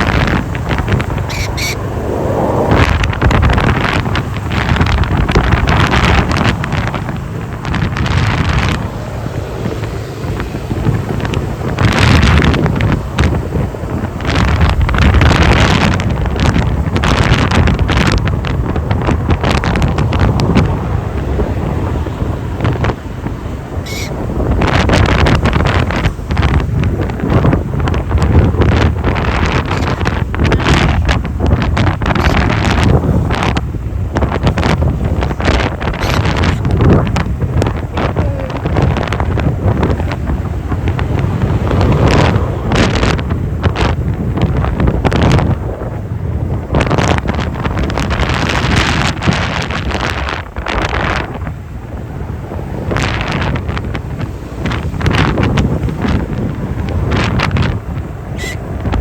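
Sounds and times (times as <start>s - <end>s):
road and engine rumble: 0.0s - 59.0s
wind buffeting microphone: 0.0s - 59.0s
high-pitched squeak: 1.3s - 1.8s, 58.4s - 58.6s.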